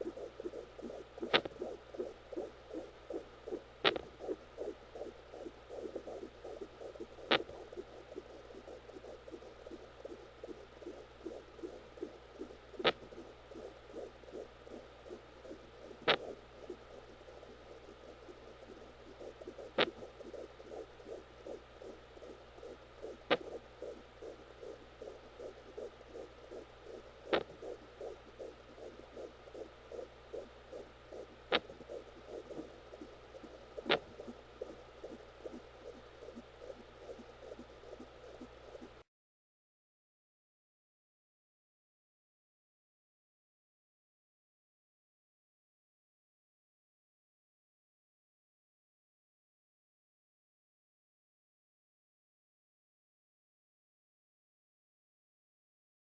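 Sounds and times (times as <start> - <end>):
fetal heartbeat on doppler: 0.0 - 39.0.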